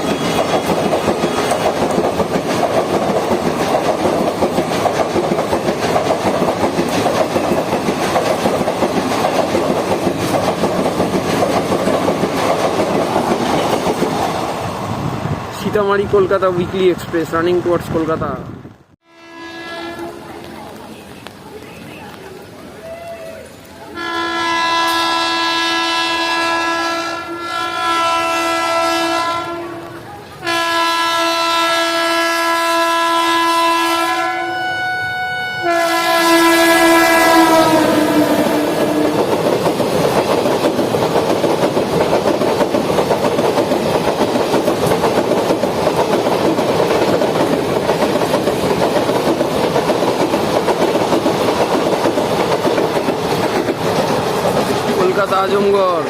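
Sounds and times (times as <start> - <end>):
train wheels clattering on rails: 0.0 - 14.6, 37.3 - 56.0
train horn blasts: 19.0 - 20.3, 23.9 - 39.3.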